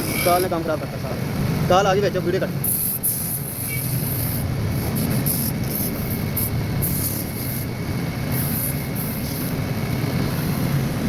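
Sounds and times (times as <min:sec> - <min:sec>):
chisel cutting spinning wood: 0:00.0 - 0:01.3
wood lathe running: 0:00.0 - 0:02.4.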